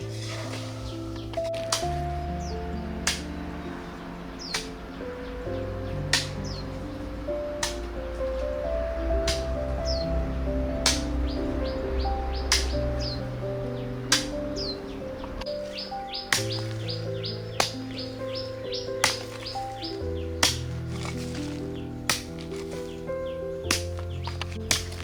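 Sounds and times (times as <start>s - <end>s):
bird chirping: 0.0s - 25.0s
soft background music: 0.0s - 25.0s.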